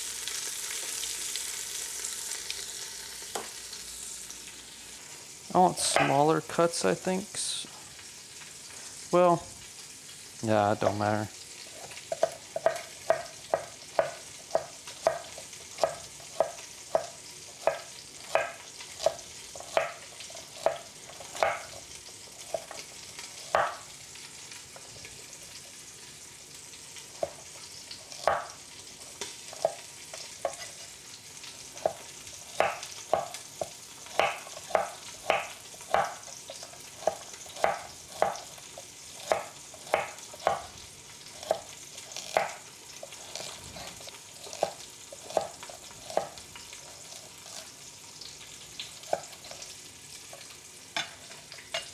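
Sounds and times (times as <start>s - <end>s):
pan sizzling: 0.0s - 51.9s
knife chopping on cutting board: 5.9s - 6.2s, 11.7s - 23.9s, 27.2s - 30.9s, 31.7s - 47.7s, 48.8s - 49.7s.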